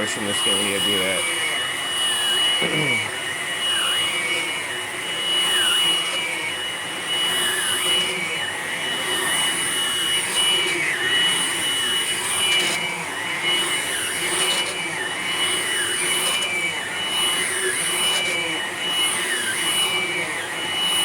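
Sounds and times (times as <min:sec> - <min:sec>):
vacuum cleaner running on carpet: 0:00.0 - 0:21.0.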